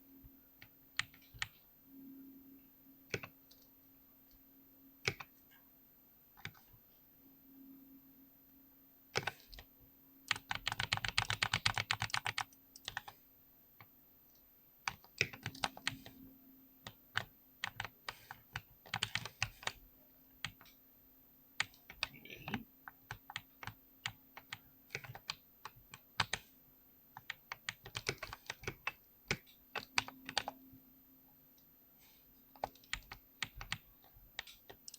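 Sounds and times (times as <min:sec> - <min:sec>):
keyboard typing: 0:00.6 - 0:01.6, 0:03.1 - 0:03.7, 0:05.0 - 0:05.5, 0:06.4 - 0:06.8, 0:09.2 - 0:09.7, 0:10.3 - 0:13.2, 0:14.8 - 0:16.2, 0:16.8 - 0:19.8, 0:20.4 - 0:20.8, 0:21.6 - 0:26.5, 0:27.2 - 0:30.7, 0:32.5 - 0:34.9.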